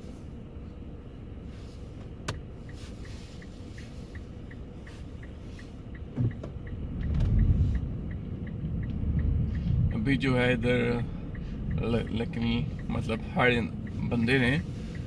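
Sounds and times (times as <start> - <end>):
car engine and tyres rumble: 0.0 - 15.0
turn signal ticking: 0.5 - 15.0.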